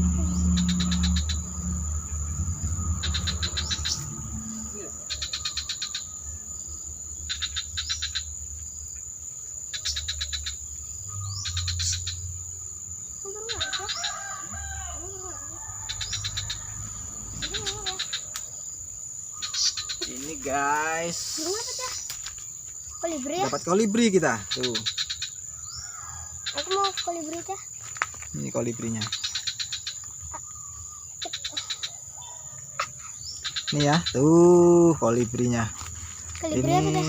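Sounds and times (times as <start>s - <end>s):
lower wavering calls: 0.0s - 27.4s
high chattering bird trills: 0.0s - 37.0s
high insect whine: 0.0s - 37.0s.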